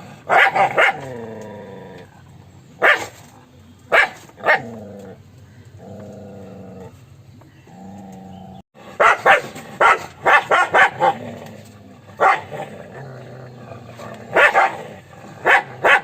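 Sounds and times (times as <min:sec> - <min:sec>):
dog growling: 0:00.0 - 0:02.6, 0:04.4 - 0:07.0, 0:07.6 - 0:16.0
dog barking: 0:00.3 - 0:01.1, 0:02.8 - 0:03.2, 0:03.9 - 0:04.8, 0:09.0 - 0:11.2, 0:12.2 - 0:12.7, 0:14.3 - 0:14.8, 0:15.4 - 0:16.0.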